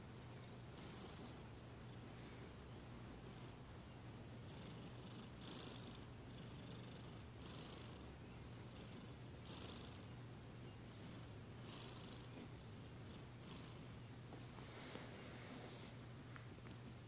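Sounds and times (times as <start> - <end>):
cat snoring faintly: 0.6 - 2.6, 3.2 - 3.7, 4.4 - 10.1, 10.7 - 16.0.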